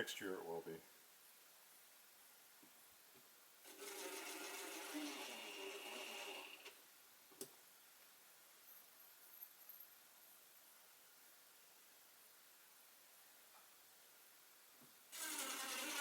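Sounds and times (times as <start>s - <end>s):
cordless drill driving screw: 3.7s - 6.8s, 15.2s - 16.0s.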